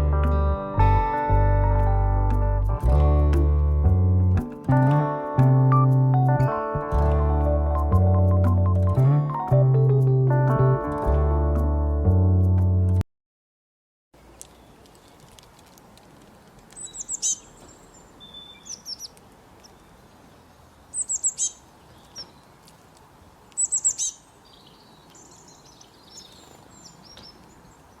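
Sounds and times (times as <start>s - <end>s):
robin singing: 16.8s - 22.6s, 23.5s - 28.0s.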